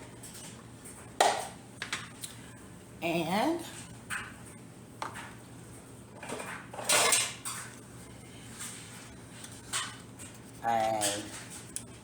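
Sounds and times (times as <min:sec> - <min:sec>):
kitchen utensils clattering: 0:06.2 - 0:07.7
utensils clinking on bowl: 0:06.3 - 0:07.8.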